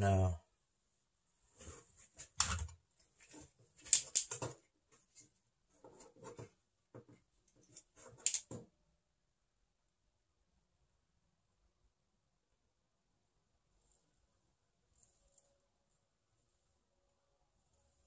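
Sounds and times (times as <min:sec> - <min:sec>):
hands handling wire and connector: 0:01.6 - 0:08.8.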